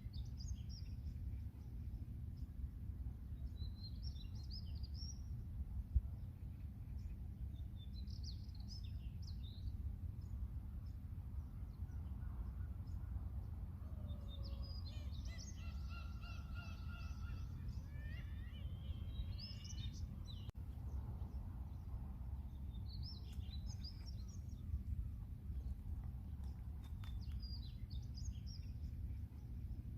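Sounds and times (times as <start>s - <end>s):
low outdoor rumble: 0.0s - 29.9s
seagulls and birds calling: 13.9s - 20.4s.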